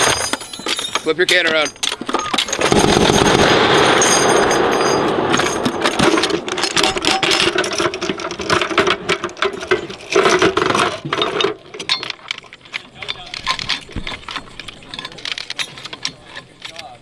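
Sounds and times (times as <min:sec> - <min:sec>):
machine gun automatic fire: 0:02.4 - 0:09.1.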